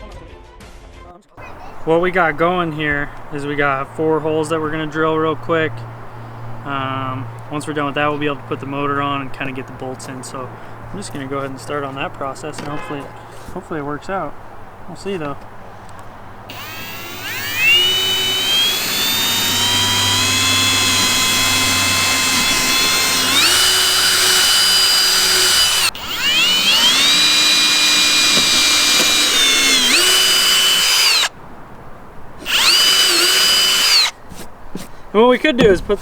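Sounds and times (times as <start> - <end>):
power drill whining: 16.5 - 31.3, 32.4 - 34.2.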